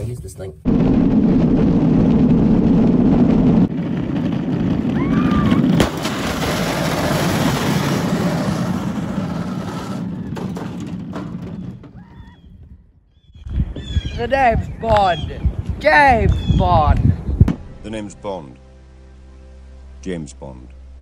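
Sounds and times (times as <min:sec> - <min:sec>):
go-kart engine running: 0:02.0 - 0:11.8.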